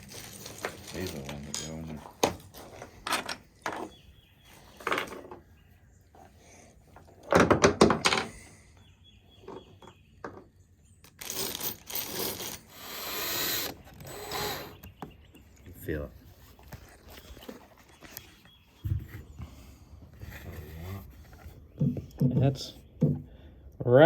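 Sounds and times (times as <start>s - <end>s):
rustling: 0.0s - 5.4s.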